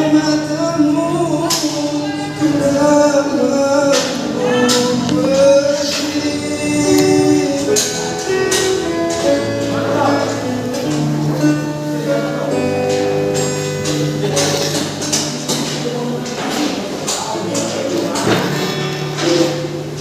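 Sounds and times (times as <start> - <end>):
man singing: 0.0 - 12.8
strummed acoustic guitar: 0.0 - 20.0.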